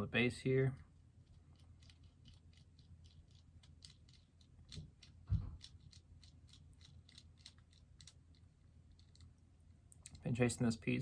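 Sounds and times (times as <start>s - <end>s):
thump: 5.3s - 5.6s.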